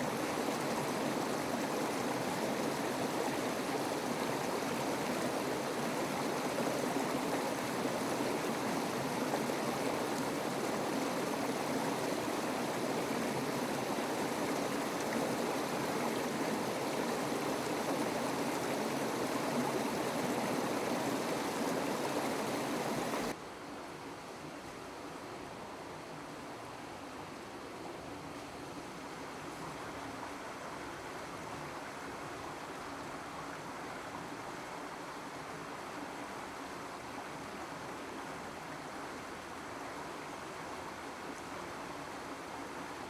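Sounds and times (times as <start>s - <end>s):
stream water rushing: 0.0s - 23.4s.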